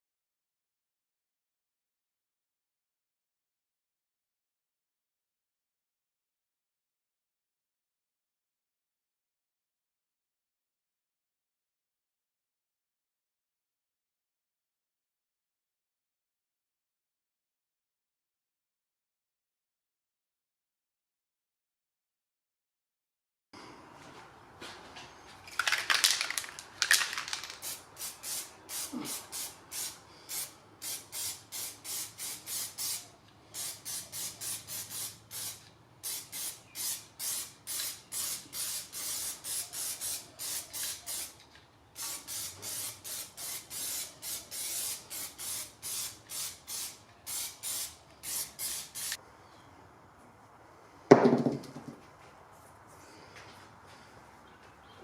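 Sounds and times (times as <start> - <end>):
loud knock: 51.1 - 52.0.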